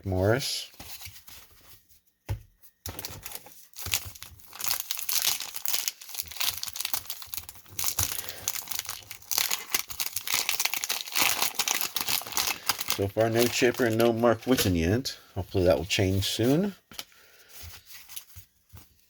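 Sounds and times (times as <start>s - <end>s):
paper wrapper tearing and crinkling: 3.0s - 14.8s.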